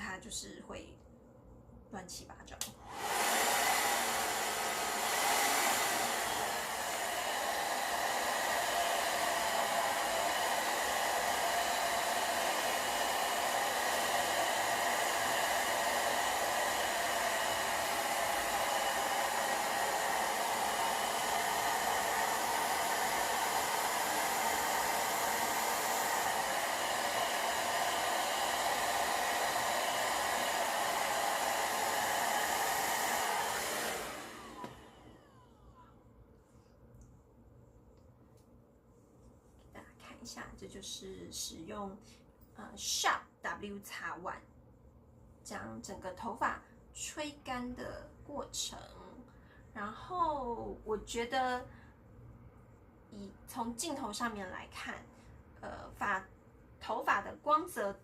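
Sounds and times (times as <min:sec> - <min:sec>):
hair dryer blowing: 0:02.1 - 0:35.6, 0:40.8 - 0:41.5.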